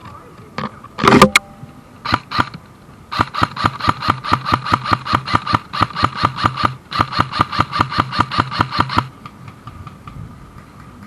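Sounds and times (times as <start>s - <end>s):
airsoft gun firing full auto: 2.0s - 9.1s.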